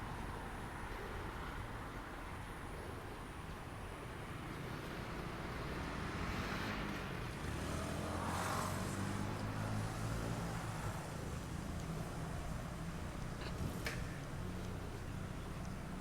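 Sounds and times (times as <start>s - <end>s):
vehicle tyre noise passing: 4.4s - 16.0s.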